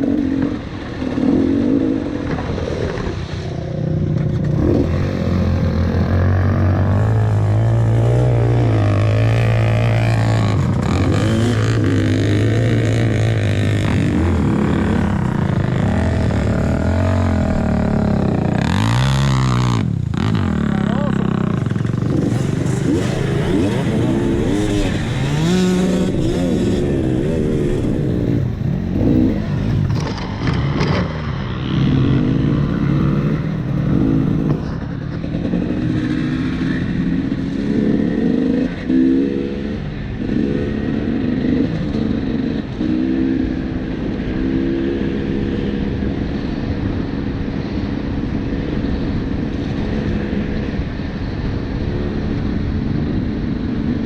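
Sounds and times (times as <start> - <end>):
dirt bike engine revving: 3.9 - 45.4.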